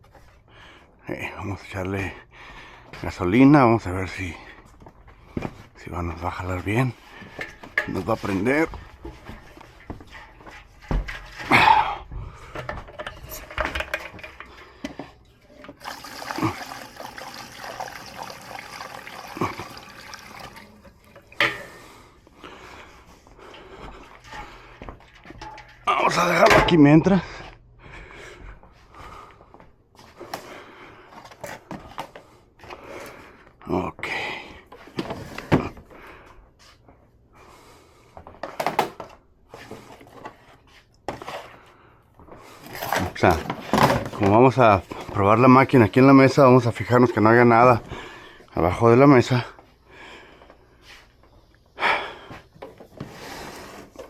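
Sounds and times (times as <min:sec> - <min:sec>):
gasoline pouring into tank: 0:15.7 - 0:21.4.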